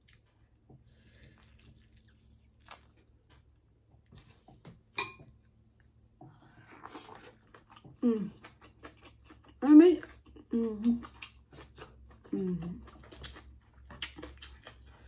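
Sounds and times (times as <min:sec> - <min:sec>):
person chewing: 0:00.0 - 0:03.2, 0:06.7 - 0:15.0.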